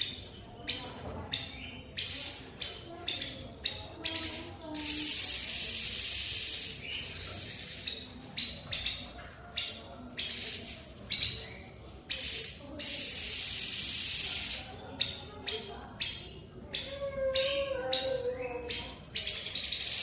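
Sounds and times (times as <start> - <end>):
harsh hissing bird calls: 4.8 - 8.2, 12.1 - 14.8.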